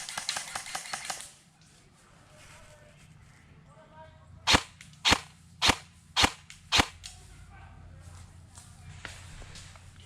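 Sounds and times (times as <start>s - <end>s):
airsoft gun shots: 4.5s - 7.0s.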